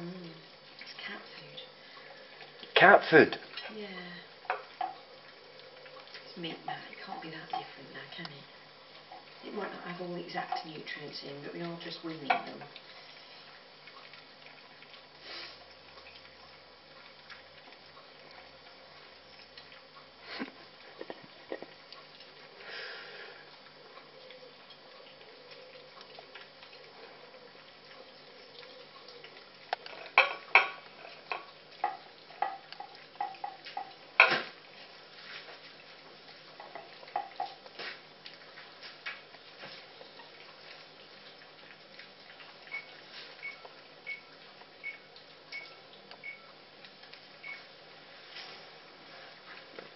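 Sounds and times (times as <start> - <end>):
puppies eating from a dish: 0.0 - 49.9
dish clinking and knocking: 30.0 - 32.6.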